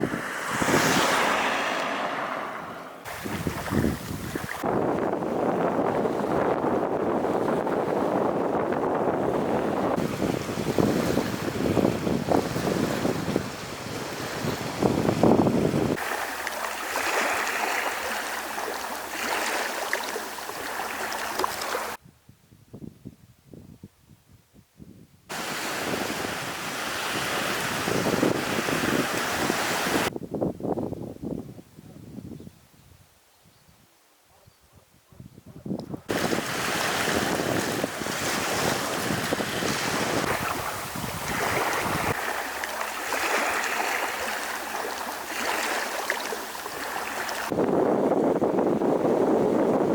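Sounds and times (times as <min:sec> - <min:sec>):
wind buffeting microphone: 0:00.0 - 0:01.9, 0:02.6 - 0:49.9
water lapping at shore: 0:03.0 - 0:22.0, 0:25.3 - 0:30.1, 0:36.1 - 0:49.8.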